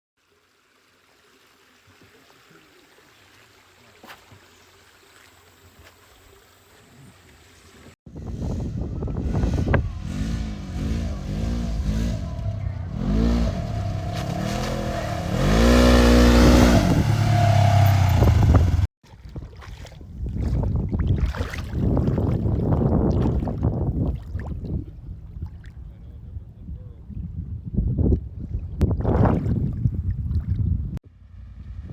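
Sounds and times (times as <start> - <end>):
engine revving: 8.1 - 18.9.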